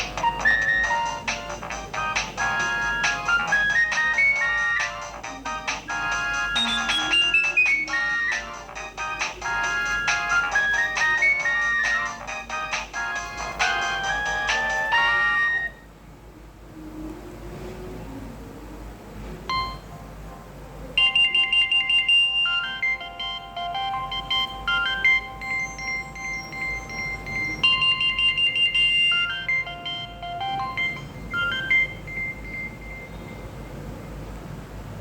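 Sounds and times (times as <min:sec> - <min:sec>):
synthesized ringtone tune: 0:00.0 - 0:15.8, 0:19.5 - 0:20.0, 0:21.0 - 0:33.5.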